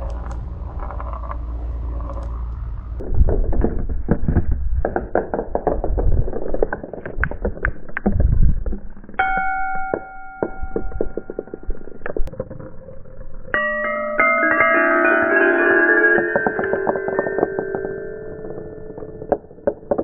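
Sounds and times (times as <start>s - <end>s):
marbles rolling on wooden tracks: 0.0s - 14.2s, 15.3s - 20.0s
xylophone bar ringing: 9.2s - 11.8s, 13.6s - 19.1s.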